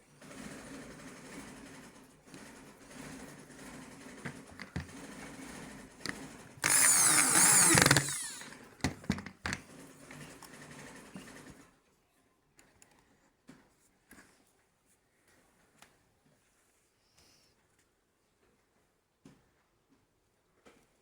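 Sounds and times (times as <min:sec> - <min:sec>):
power tool whining: 0:06.1 - 0:09.0.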